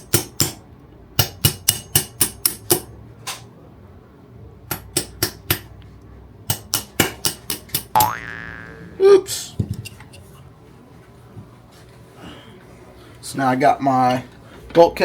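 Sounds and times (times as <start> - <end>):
hammer tapping metal punch: 0.0 - 0.6, 1.2 - 2.9, 6.5 - 8.0.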